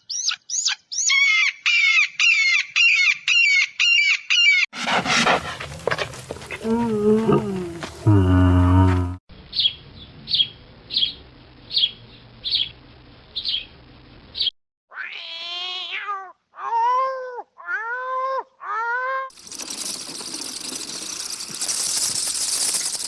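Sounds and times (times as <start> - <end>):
small bird chirping: 9.5 - 12.8, 13.4 - 13.7, 19.3 - 23.0
cat meowing: 14.9 - 18.1.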